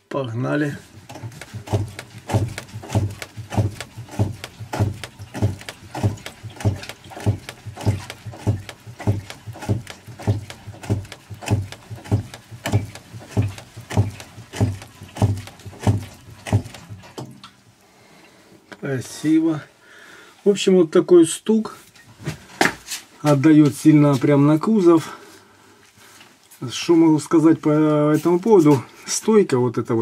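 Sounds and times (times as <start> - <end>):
suspension strut knocking: 0.9 - 17.3.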